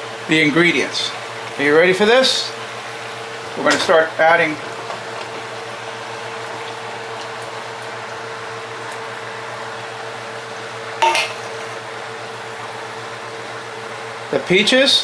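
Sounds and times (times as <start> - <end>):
meat sizzling in a pot: 0.1 - 14.3
ringing clank on cookware: 11.0 - 11.8.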